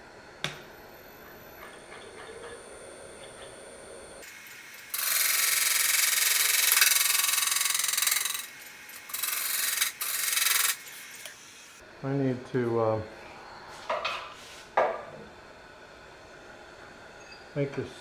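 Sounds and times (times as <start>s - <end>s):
lathe tool scraping wood: 5.0s - 10.8s.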